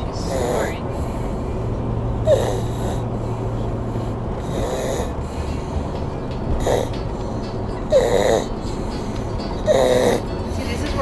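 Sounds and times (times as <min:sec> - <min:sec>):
low steady hum: 0:00.0 - 0:11.0
person snoring: 0:02.3 - 0:03.0, 0:04.4 - 0:05.2, 0:06.6 - 0:06.9, 0:07.9 - 0:08.5, 0:09.7 - 0:10.2.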